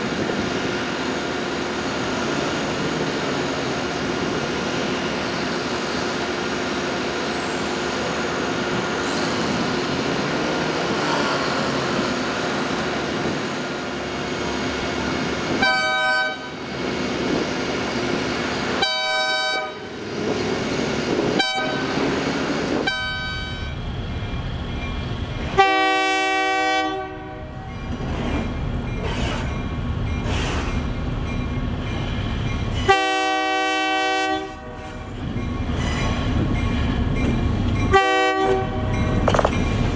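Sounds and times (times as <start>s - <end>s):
locomotive engine drone: 0.0s - 39.9s
locomotive horn blasts: 15.6s - 16.6s, 18.8s - 19.9s, 21.4s - 22.0s, 22.8s - 23.7s, 25.5s - 27.6s, 32.9s - 35.0s, 37.9s - 39.1s.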